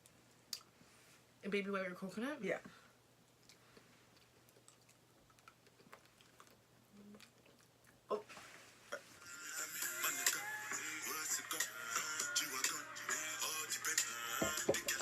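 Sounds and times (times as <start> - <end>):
person chewing candy: 3.3 - 8.1.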